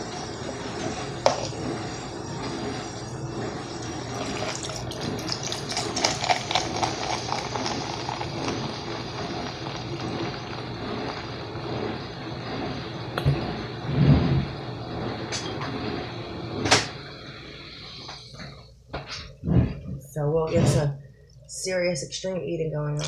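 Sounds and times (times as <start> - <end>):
soda fizzing: 0.0 - 12.4.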